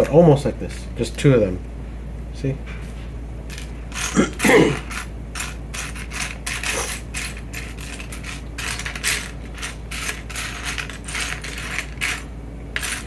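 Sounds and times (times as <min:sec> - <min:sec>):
plastic bricks clicking and rattling: 0:03.5 - 0:13.0.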